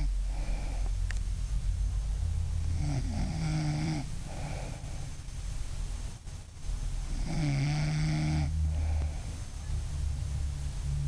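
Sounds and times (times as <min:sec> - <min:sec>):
woman snoring: 0:02.8 - 0:05.1, 0:07.1 - 0:09.3.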